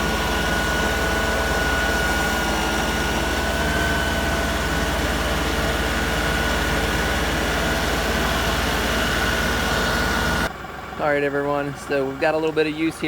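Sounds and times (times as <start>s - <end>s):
tractor diesel engine running: 0.0s - 13.0s.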